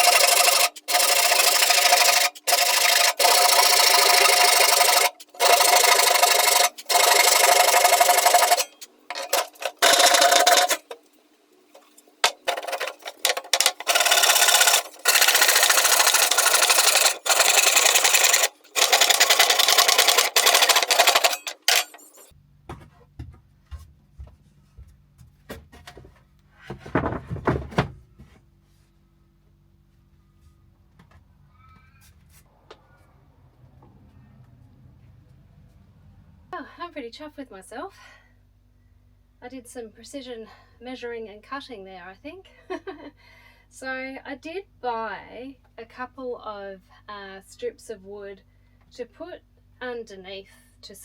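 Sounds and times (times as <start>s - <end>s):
handsaw rasping through wood: 12.2s - 21.9s.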